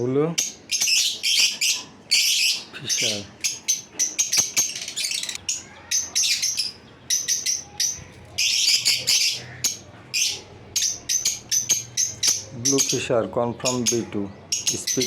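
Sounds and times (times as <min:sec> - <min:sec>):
lovebirds chirping: 0:00.0 - 0:15.0.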